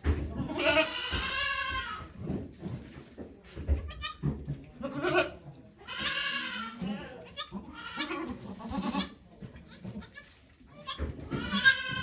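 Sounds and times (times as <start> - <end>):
goat bleating: 0.4 - 2.0, 3.9 - 4.2, 4.8 - 12.0.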